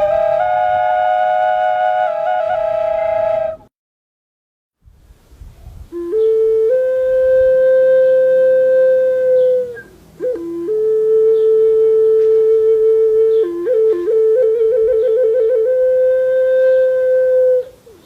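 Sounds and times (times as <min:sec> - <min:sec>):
wind instrument flute-like notes: 0:00.0 - 0:03.7, 0:05.8 - 0:18.0.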